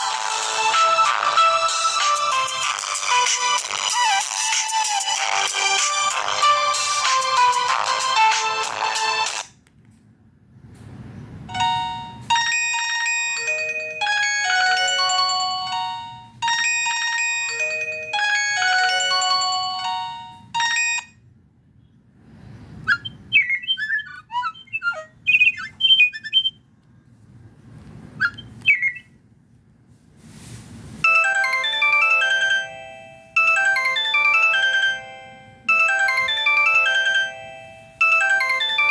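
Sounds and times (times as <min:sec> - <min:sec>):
fast arpeggio ringtone: 0:00.0 - 0:09.0, 0:11.5 - 0:21.2, 0:22.9 - 0:26.5, 0:31.1 - 0:38.9
synthesized ringtone melody: 0:00.0 - 0:09.5, 0:11.5 - 0:21.2, 0:22.9 - 0:26.5, 0:31.0 - 0:38.9.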